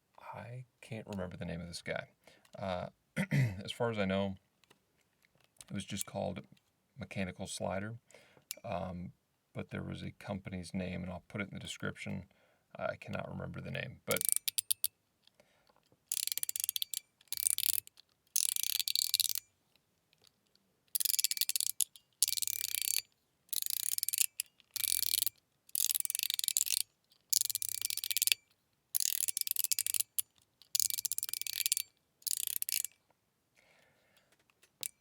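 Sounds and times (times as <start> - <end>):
fidget slider clicking: 14.1 - 14.9, 16.1 - 19.5, 20.9 - 33.0, 34.7 - 35.0.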